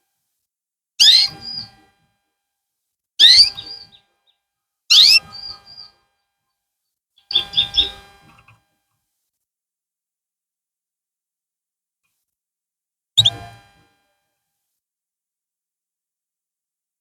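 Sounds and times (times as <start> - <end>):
canary chirping: 1.0 - 1.6, 3.2 - 4.0, 4.9 - 5.8, 7.3 - 7.9, 13.2 - 13.5.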